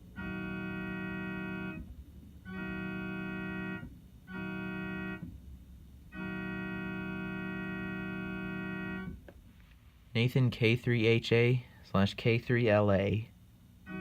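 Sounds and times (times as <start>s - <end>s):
electronic keyboard chord blasts: 0.0s - 5.4s, 6.1s - 9.2s.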